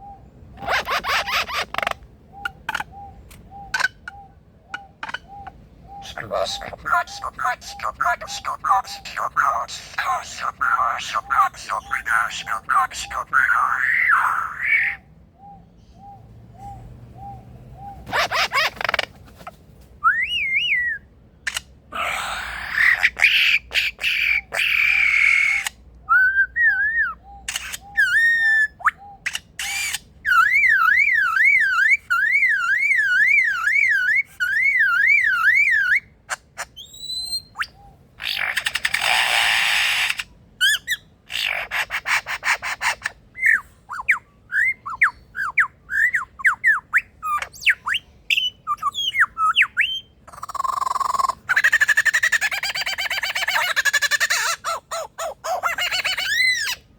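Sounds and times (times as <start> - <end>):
lyrebird singing mimicry: 0.0 - 19.1, 20.0 - 56.9.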